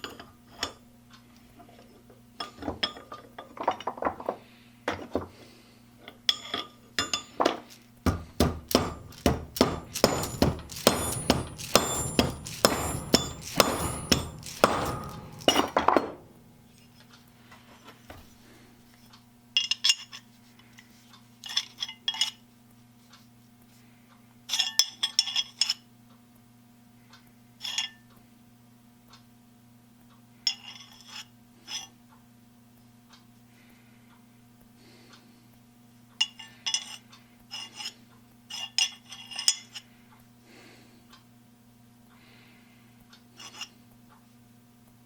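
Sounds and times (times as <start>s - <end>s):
steady low hum: 7.0s - 17.4s
light metallic clinks: 8.6s - 16.6s.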